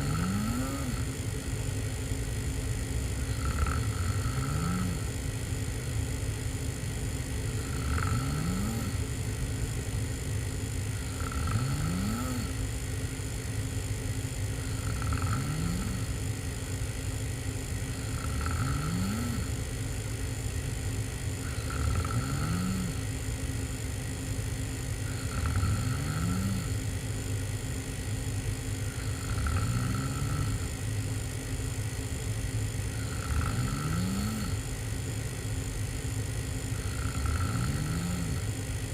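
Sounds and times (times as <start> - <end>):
person snoring: 0.0 - 1.2, 3.1 - 5.3, 7.4 - 9.5, 10.8 - 13.2, 14.4 - 16.8, 17.7 - 19.6, 21.3 - 23.2, 25.0 - 27.1, 28.7 - 30.9, 32.9 - 34.7, 36.6 - 38.6.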